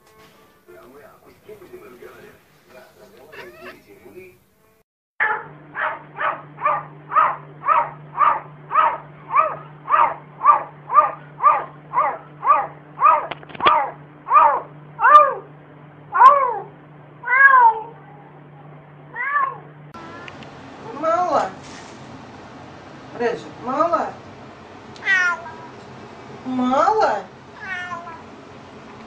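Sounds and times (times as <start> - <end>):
cat meowing: 3.3 - 3.8, 16.2 - 18.3, 19.1 - 20.4, 25.0 - 25.8, 27.6 - 28.3.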